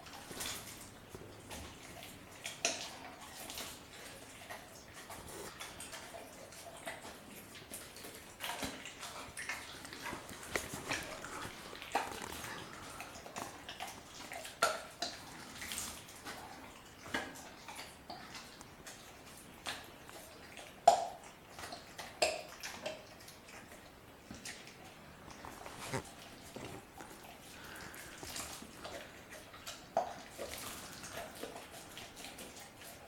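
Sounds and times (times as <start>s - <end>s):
puppy chewing bone and meat: 0.0s - 33.0s
bone cracking: 10.2s - 13.5s.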